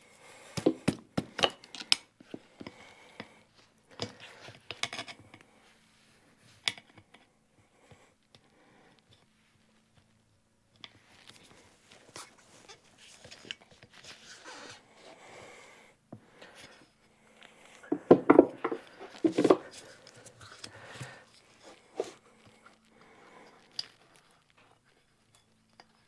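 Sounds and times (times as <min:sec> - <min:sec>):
scraping and clicking on wheel rim: 0:18.1 - 0:21.2.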